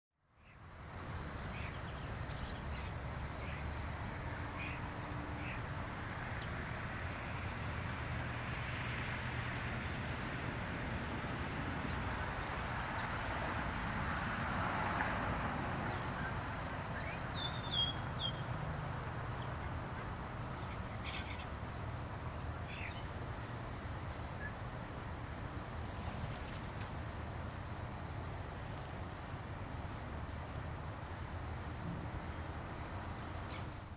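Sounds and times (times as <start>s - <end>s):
flock of birds passing: 1.3s - 17.0s, 18.5s - 24.6s, 25.5s - 28.0s.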